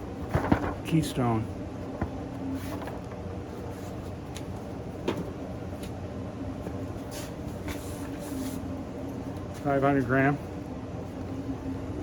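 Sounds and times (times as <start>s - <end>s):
steady background hum: 0.0s - 12.0s
cardboard boxes rustling and knocking: 0.2s - 0.9s.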